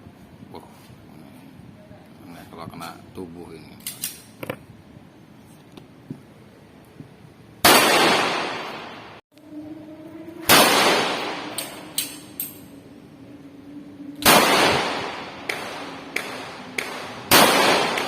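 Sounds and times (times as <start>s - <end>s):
pistol shots echoing: 7.6s - 9.2s, 10.5s - 12.2s, 14.2s - 18.0s.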